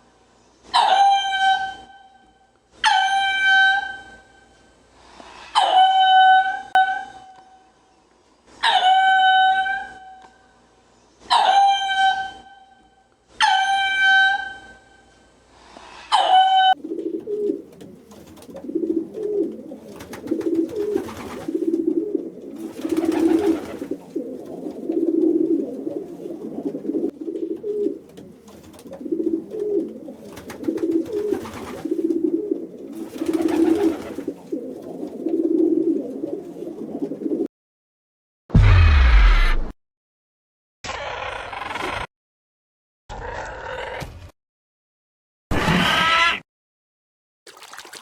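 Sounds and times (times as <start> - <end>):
pigeons cooing: 16.7 - 37.5.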